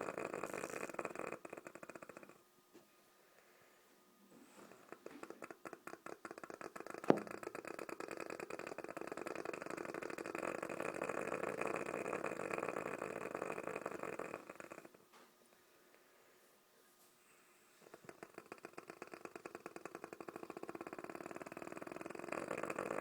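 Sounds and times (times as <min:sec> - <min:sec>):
badger snoring: 0:00.0 - 0:02.4, 0:04.6 - 0:15.0, 0:17.8 - 0:23.0.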